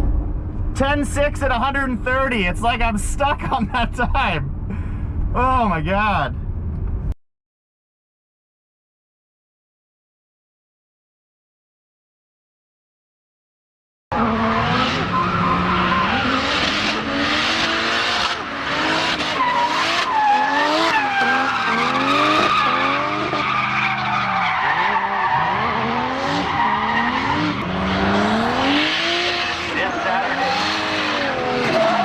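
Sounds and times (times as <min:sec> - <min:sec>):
car engines revving: 0:14.1 - 0:32.0
tyres squealing: 0:14.6 - 0:25.8.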